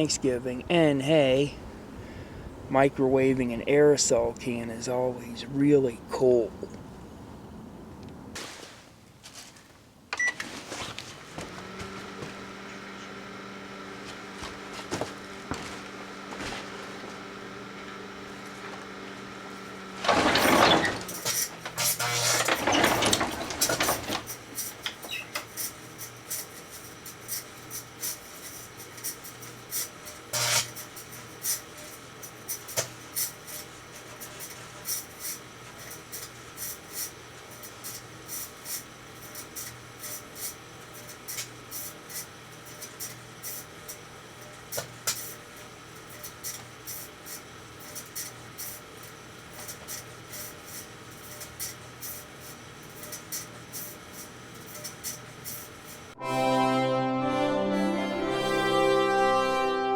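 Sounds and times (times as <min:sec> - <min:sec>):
microwave oven humming: 0:10.1 - 0:56.3.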